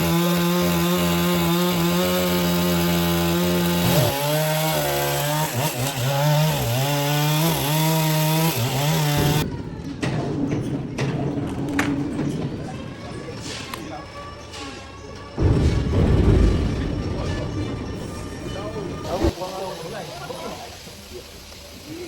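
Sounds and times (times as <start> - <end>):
power saw cutting wood: 0.0 - 9.4.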